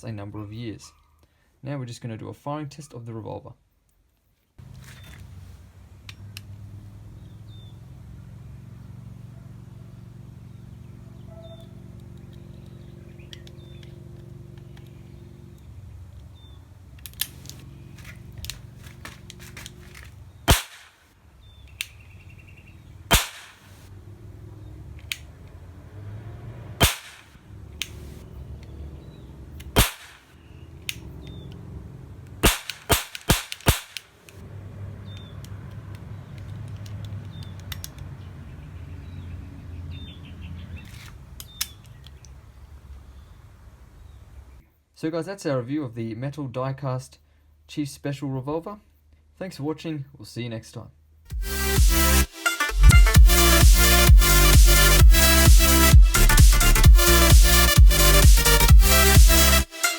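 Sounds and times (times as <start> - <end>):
cap gun pops: 20.5 - 21.0, 23.1 - 23.7, 26.8 - 27.3, 29.7 - 30.3, 32.4 - 34.1.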